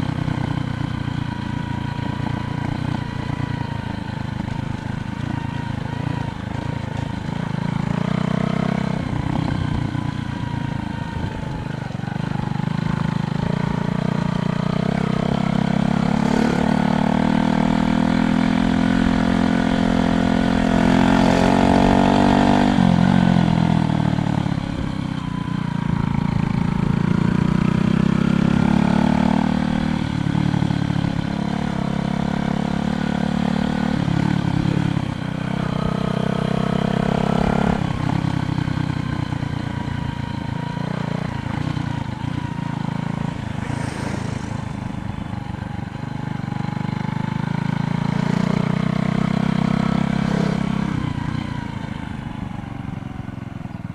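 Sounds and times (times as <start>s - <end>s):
vehicle engines passing: 15.0s - 18.0s, 40.9s - 53.9s.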